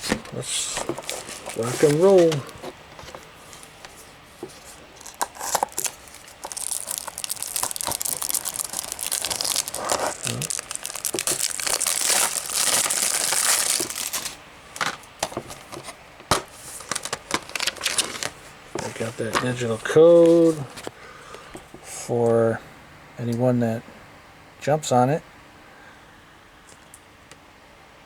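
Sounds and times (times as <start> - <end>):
plastic wrap crinkling and tearing: 0.0 - 3.8, 4.5 - 15.8, 16.6 - 20.6.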